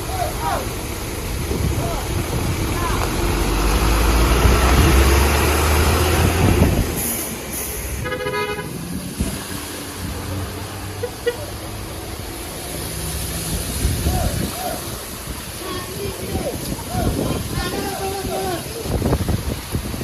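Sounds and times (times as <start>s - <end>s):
vehicle engine rumbling: 0.0s - 20.0s
car horn toot: 8.0s - 8.8s.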